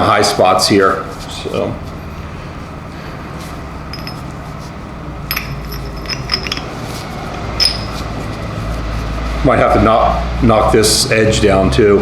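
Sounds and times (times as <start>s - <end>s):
steady low hum: 1.0s - 9.4s
metal parts clinking: 3.9s - 4.6s, 5.3s - 8.4s.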